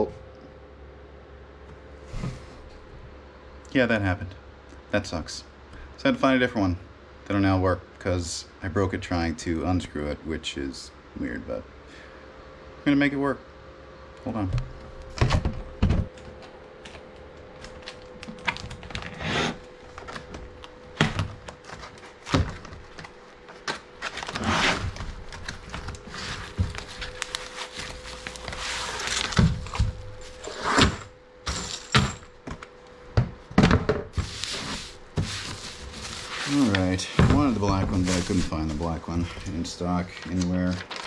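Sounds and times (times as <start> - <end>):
faint steady hum: 0.0 - 41.0
scraping and rustling: 21.4 - 31.0, 34.2 - 39.6.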